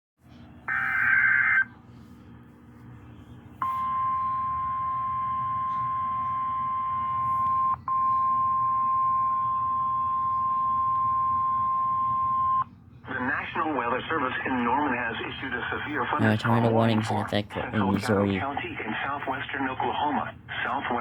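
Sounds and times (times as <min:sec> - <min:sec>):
low radio hum: 0:00.2 - 0:21.0
steady alarm tone: 0:00.7 - 0:01.7, 0:03.6 - 0:12.6
warbling digital header tones: 0:00.7 - 0:01.7.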